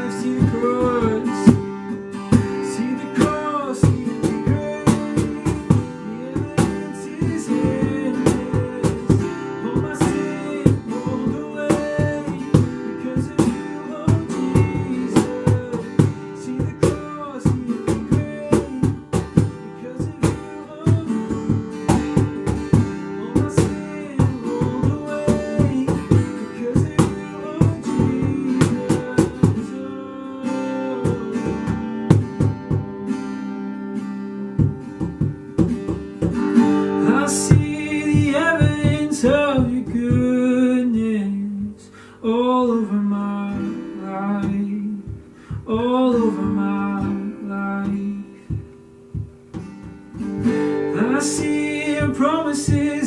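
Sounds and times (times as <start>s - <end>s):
wordless vocal melody: 0.0s - 32.1s, 36.1s - 49.2s, 50.2s - 53.0s
worship band music: 0.0s - 53.0s
sharp beats: 0.4s - 29.6s.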